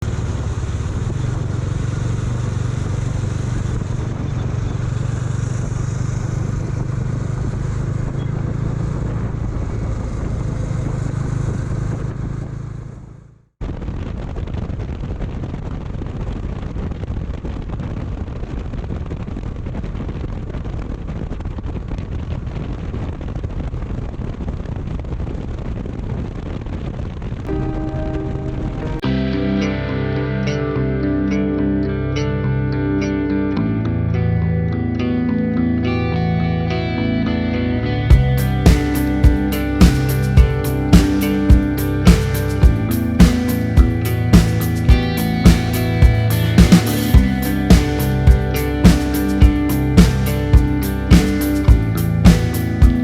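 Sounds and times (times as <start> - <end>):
steady rushing noise: 0.0 - 12.2, 36.2 - 53.0
motorcycle engine running: 0.0 - 13.4, 38.1 - 53.0.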